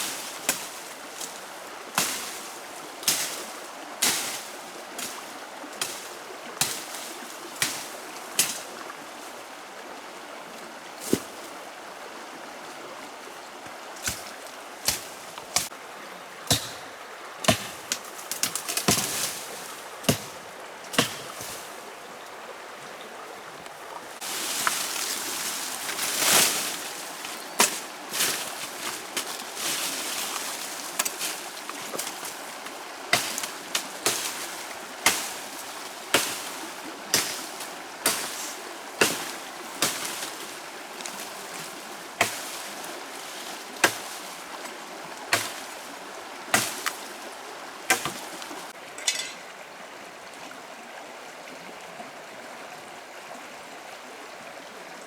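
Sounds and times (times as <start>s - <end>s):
rustling hiss: 0.0s - 11.7s, 16.4s - 48.8s
hand tool chopping wood: 14.0s - 14.3s, 14.9s - 15.7s, 16.5s - 21.6s, 24.2s - 44.4s, 45.3s - 45.8s, 46.5s - 47.1s, 47.9s - 49.3s.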